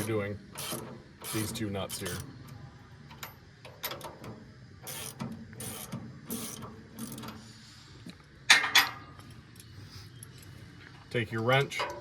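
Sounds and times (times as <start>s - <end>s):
wrench ratcheting: 4.9s - 7.3s.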